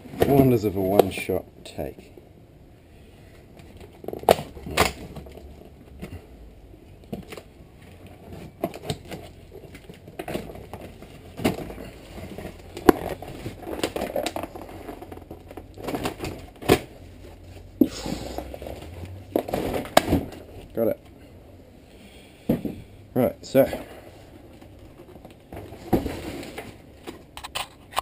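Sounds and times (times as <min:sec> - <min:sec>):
cardboard snapping and crackling: 0:03.6 - 0:06.2, 0:07.0 - 0:17.0, 0:17.8 - 0:20.7.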